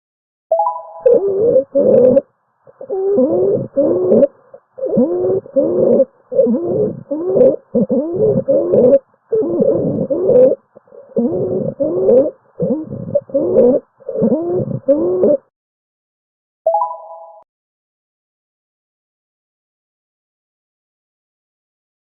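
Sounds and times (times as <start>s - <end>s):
wheezing breath sounds: 1.1s - 15.5s.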